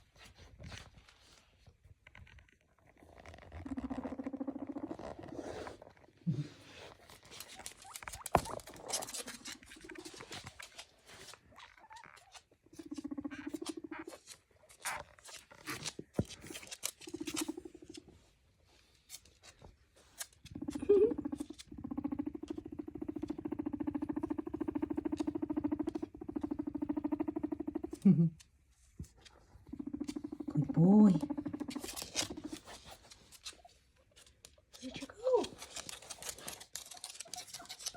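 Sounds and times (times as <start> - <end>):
guinea pig purring: 2.1 - 37.9
guinea pig squeak: 7.2 - 18.0, 20.1 - 28.0, 29.7 - 37.9.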